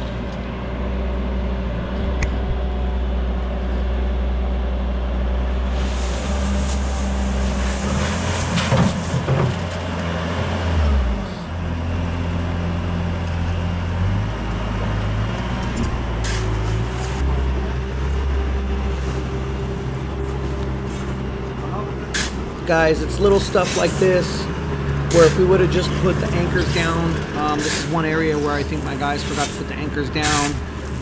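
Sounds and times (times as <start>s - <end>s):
diesel engine revving: 0.0s - 31.0s
rushing hissy noise: 5.7s - 9.5s, 22.6s - 24.5s.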